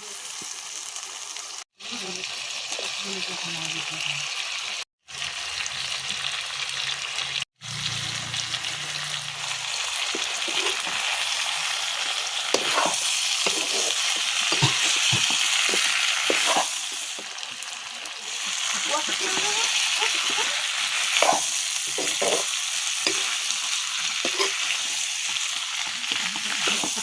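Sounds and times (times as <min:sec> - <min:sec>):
food sizzling in a pan: 0:00.0 - 0:27.0
spoon scraping in a pan: 0:09.6 - 0:17.4, 0:18.3 - 0:27.0.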